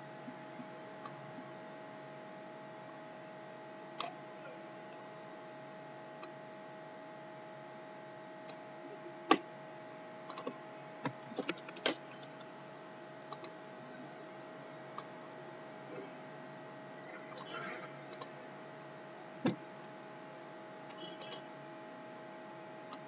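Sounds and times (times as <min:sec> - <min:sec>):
faint electrical hum: 0:00.0 - 0:23.0
computer mouse clicking: 0:10.3 - 0:12.5, 0:13.3 - 0:13.6, 0:17.4 - 0:18.3, 0:21.2 - 0:21.4.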